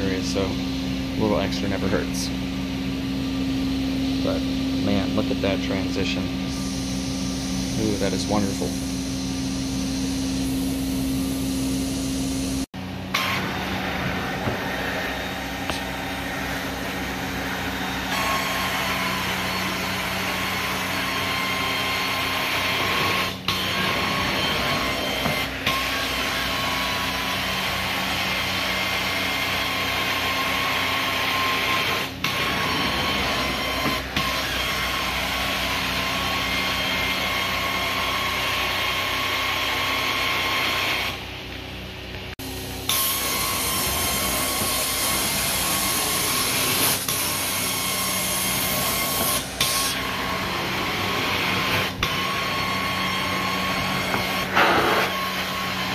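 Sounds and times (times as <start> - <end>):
vacuum suction rushing hiss: 13.2 - 20.9, 42.9 - 51.9.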